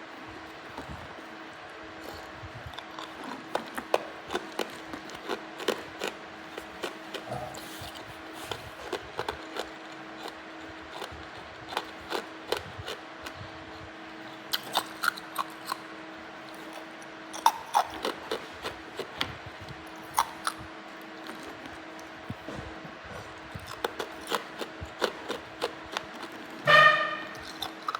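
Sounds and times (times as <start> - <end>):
ice being chewed: 1.7 - 22.2, 23.3 - 26.6, 27.3 - 27.9.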